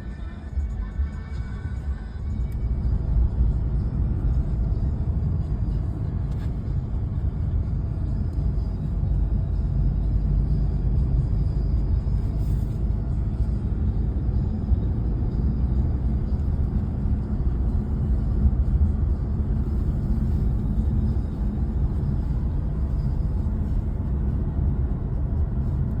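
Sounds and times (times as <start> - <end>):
steady low rumbling: 0.0 - 26.0.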